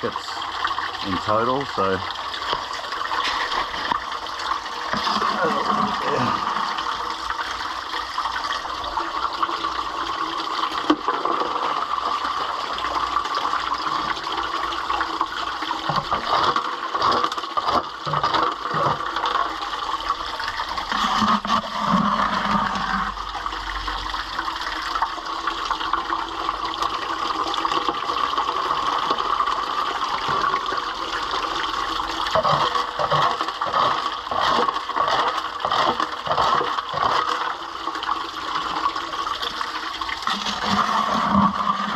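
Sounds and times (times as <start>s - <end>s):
running water rushing: 0.0s - 41.9s.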